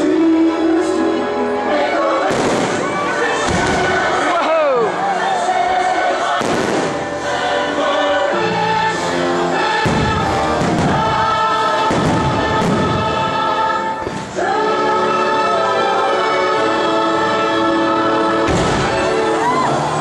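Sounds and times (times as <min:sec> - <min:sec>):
choral singing with orchestra: 0:00.0 - 0:20.0
fireworks banging: 0:02.2 - 0:04.4, 0:06.2 - 0:07.4, 0:09.6 - 0:14.4, 0:18.4 - 0:19.3.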